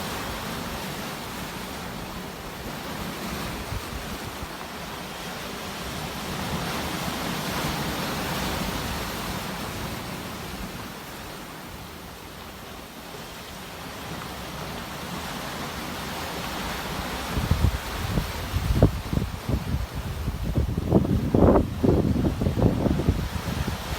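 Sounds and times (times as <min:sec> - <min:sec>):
sea waves washing in: 0:00.0 - 0:23.9
wind buffeting microphone: 0:17.3 - 0:23.9.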